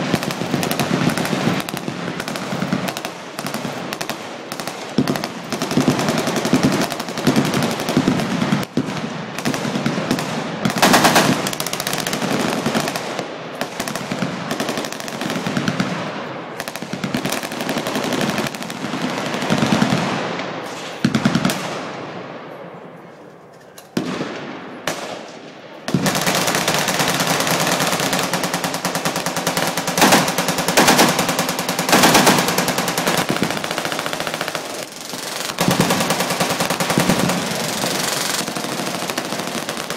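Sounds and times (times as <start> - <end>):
machine guns firing: 0.0 - 21.8, 25.9 - 39.9.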